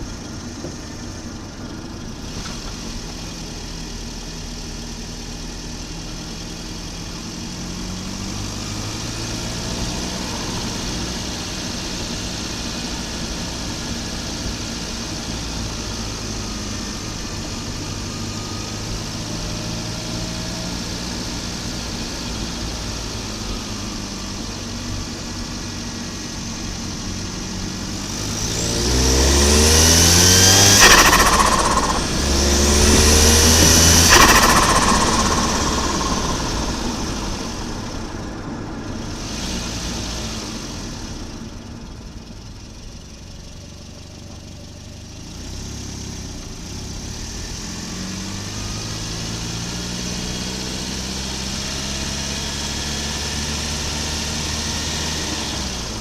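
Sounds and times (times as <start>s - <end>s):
car engine revving with whine: 0.0s - 56.0s.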